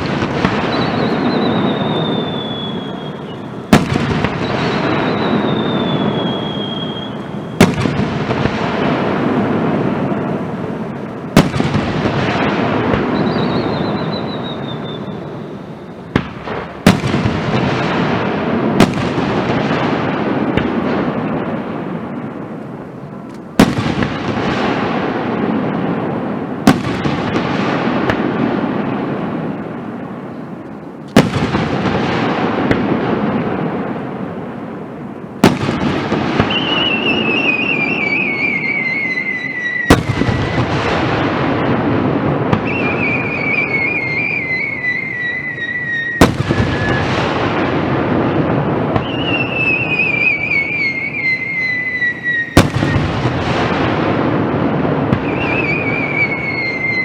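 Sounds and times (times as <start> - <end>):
falling firework whistles: 0.0 - 8.6, 11.3 - 19.9, 35.4 - 48.1, 48.9 - 57.0
firework crackling: 0.0 - 57.0
firework shells bursting: 35.4 - 57.0.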